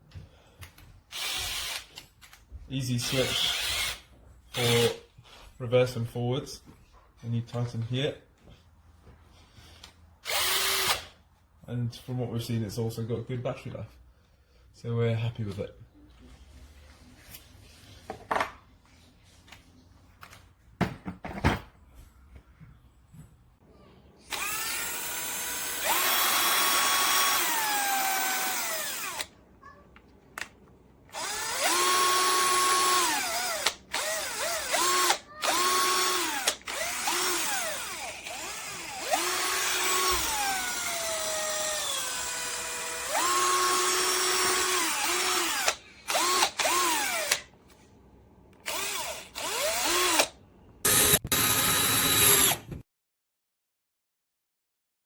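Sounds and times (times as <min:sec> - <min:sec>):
cordless drill motor whining: 0:01.1 - 0:02.0, 0:03.0 - 0:05.0, 0:10.2 - 0:11.1, 0:24.3 - 0:29.3, 0:31.1 - 0:47.5, 0:48.6 - 0:52.8.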